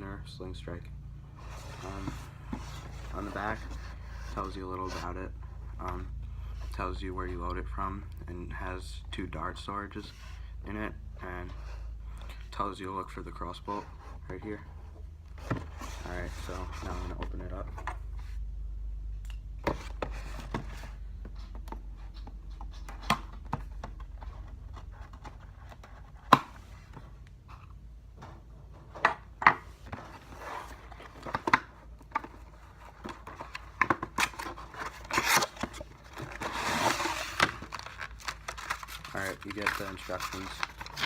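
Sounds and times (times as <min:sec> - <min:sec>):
cardboard packaging rustling: 0:29.7 - 0:41.0.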